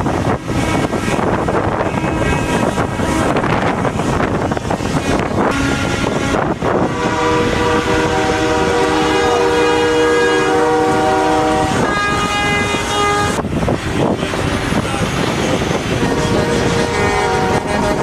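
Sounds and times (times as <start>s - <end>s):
traffic noise: 0.0s - 18.0s
truck air horn blasts: 5.5s - 13.4s, 16.0s - 18.0s.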